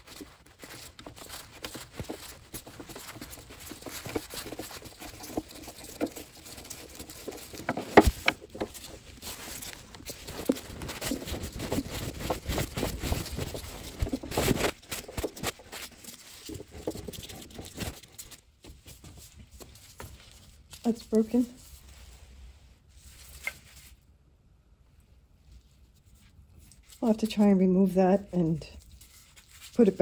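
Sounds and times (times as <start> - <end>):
handling noises on wooden table: 4.0 - 11.5.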